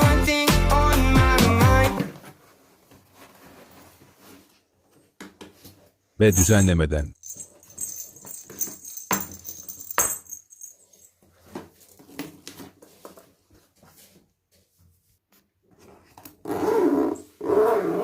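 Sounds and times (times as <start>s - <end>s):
household items knocking and clattering: 5.2s - 13.2s.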